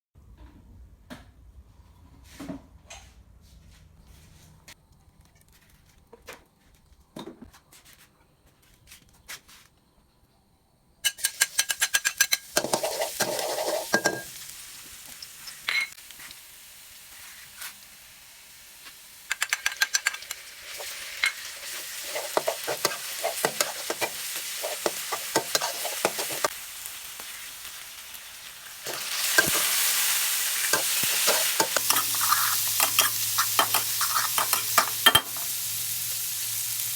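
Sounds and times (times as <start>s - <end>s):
spatula scraping and clacking pan: 11.1s - 14.4s, 19.3s - 26.5s, 28.9s - 29.9s, 30.6s - 35.6s
oil sizzling in a hot pan: 11.2s - 36.9s.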